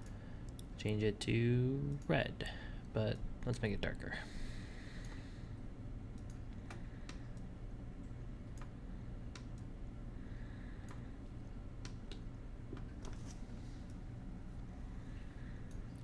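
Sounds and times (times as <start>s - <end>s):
computer mouse clicking: 6.1s - 9.7s, 10.8s - 11.0s, 11.8s - 14.0s.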